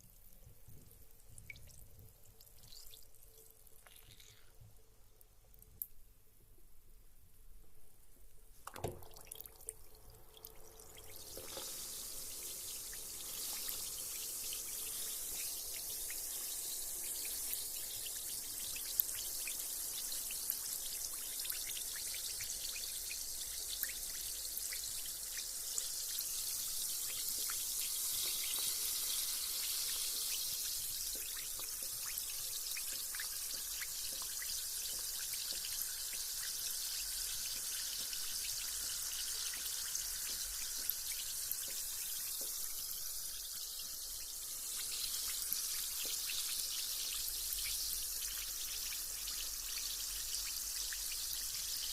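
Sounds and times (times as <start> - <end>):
bath bomb fizzing: 3.7 - 4.6, 8.6 - 43.6.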